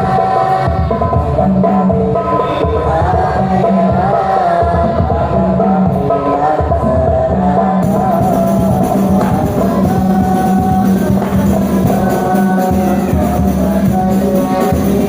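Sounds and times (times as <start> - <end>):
person singing devotional song: 0.0 - 15.0
tambourine-like percussion: 7.8 - 15.0.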